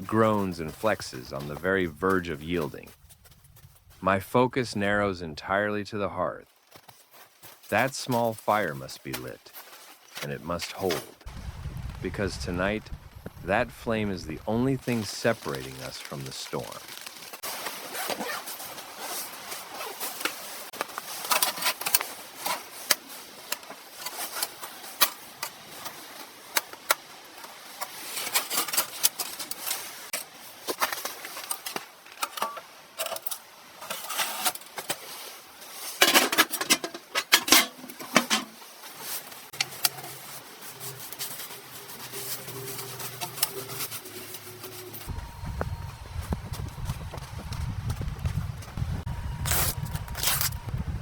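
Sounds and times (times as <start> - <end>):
clicks knocks and scrapes at stove: 36.0 - 38.6.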